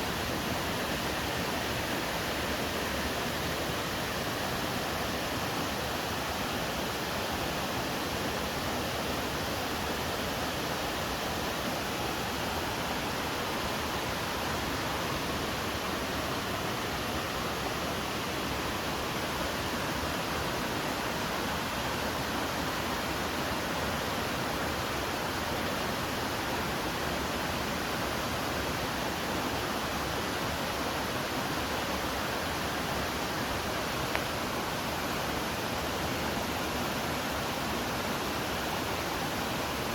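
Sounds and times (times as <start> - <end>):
water rushing over rocks: 0.0 - 39.9.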